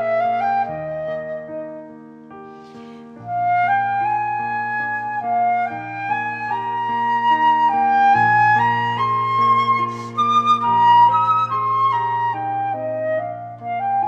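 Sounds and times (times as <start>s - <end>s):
slow melody of held notes: 0.0s - 14.0s.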